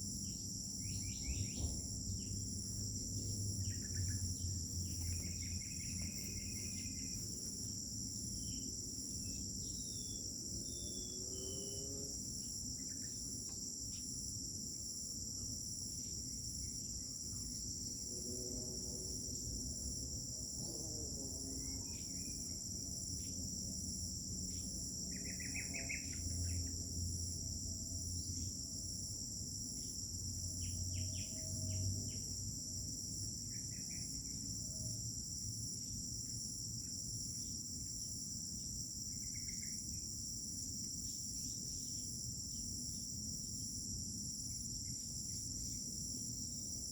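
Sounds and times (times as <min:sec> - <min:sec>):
crickets chirring: 0:00.0 - 0:46.9.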